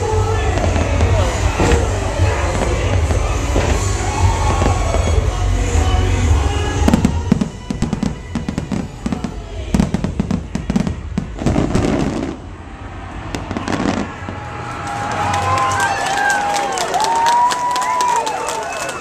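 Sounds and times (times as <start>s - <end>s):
fireworks bangs and crackles: 0.0s - 15.0s
fireworks deep rumble: 0.0s - 16.3s
show music: 0.0s - 19.0s.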